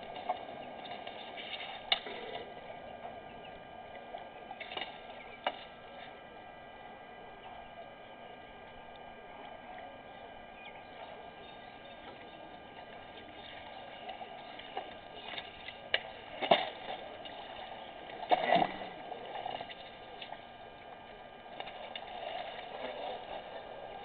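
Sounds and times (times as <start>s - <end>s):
steady background hiss: 0.0s - 24.0s
water splashing and gurgling: 8.4s - 24.0s.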